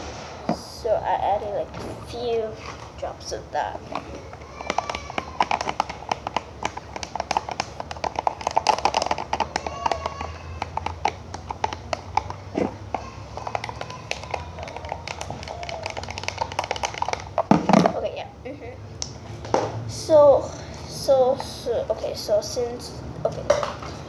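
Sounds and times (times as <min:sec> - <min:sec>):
utensil clicking against container: 0:04.6 - 0:17.8.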